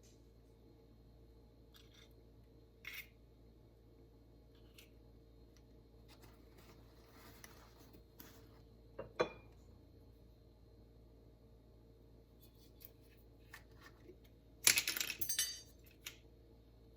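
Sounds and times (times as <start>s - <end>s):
light clicks and scrapes: 6.1s - 8.7s.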